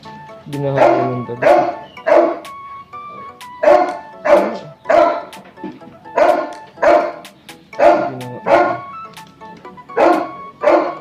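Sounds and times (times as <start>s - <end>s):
background music: 0.0s - 11.0s
dog barking: 0.8s - 2.4s, 3.6s - 5.3s, 6.2s - 7.2s, 7.8s - 8.9s, 10.0s - 11.0s.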